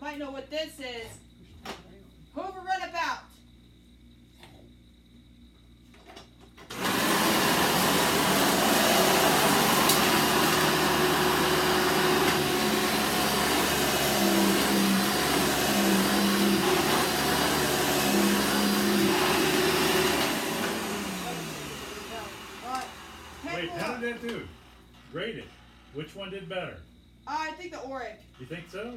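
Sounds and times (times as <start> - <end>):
vacuum cleaner running: 6.6 - 25.0.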